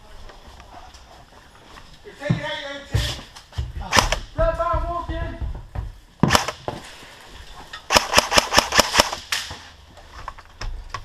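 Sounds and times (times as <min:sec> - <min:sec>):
airsoft gun shots: 0:03.9 - 0:04.3, 0:06.2 - 0:06.7, 0:07.9 - 0:09.5.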